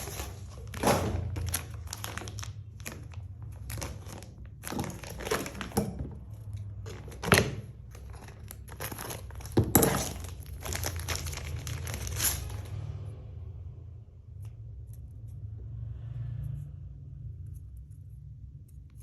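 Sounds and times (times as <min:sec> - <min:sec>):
plastic packaging crinkling: 0:00.0 - 0:12.8.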